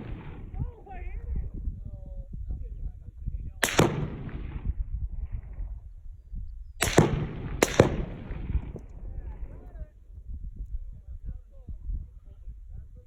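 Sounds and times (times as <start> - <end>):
low rumble of wind: 0.0 - 13.0
gunshot cracks: 3.6 - 4.7, 6.8 - 8.8.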